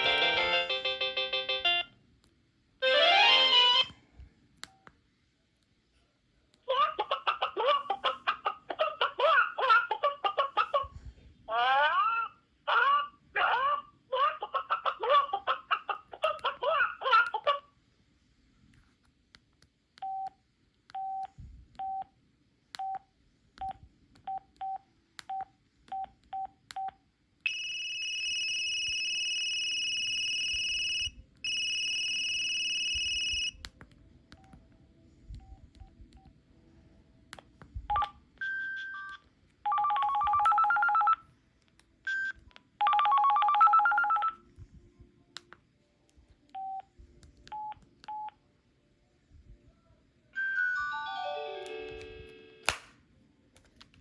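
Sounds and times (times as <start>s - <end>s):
melodic ringtone: 0.0s - 1.9s, 2.8s - 4.0s, 39.7s - 41.2s, 42.8s - 44.4s, 50.4s - 52.6s
phone keypad beeps: 37.9s - 41.2s, 42.1s - 44.4s.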